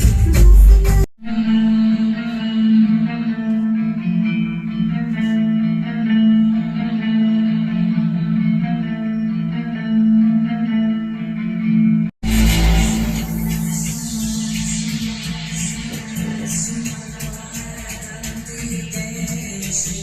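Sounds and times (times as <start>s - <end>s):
held low note: 12.2s - 16.5s.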